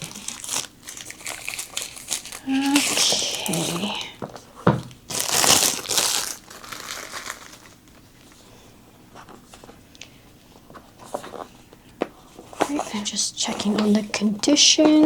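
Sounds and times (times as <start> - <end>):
packaging crinkling and rustling: 0.0 - 8.4.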